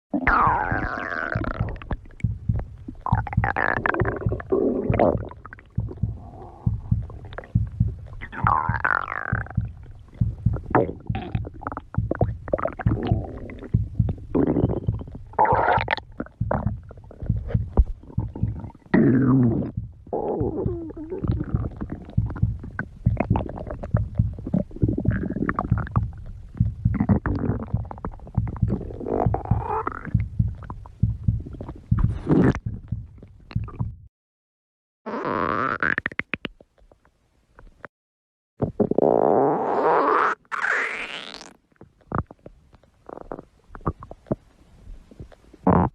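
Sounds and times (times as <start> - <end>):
stomach growling and gurgling: 0.1 - 34.1, 38.6 - 45.9.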